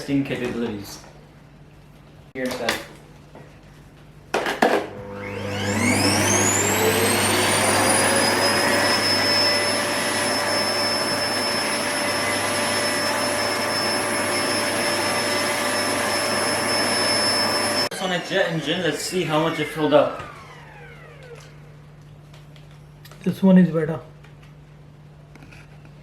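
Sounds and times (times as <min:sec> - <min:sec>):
vacuum cleaner motor running: 0:04.6 - 0:21.8.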